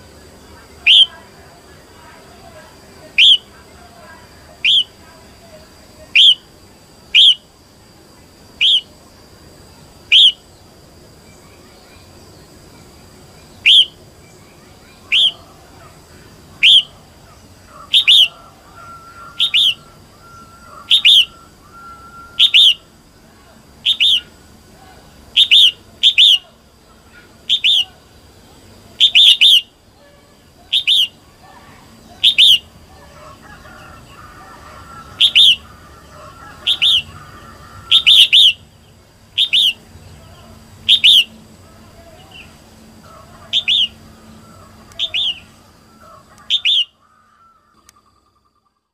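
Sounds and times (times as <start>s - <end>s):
bulbul sharp calls: 0.0s - 7.6s, 8.3s - 10.6s, 11.2s - 48.8s
faint bird chirping: 0.0s - 48.9s.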